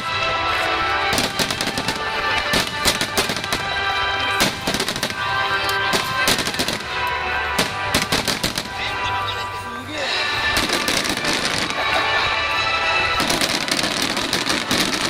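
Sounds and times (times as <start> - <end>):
fireworks bangs and crackles: 0.0 - 9.5, 10.1 - 15.0
music with held tones: 0.0 - 15.0.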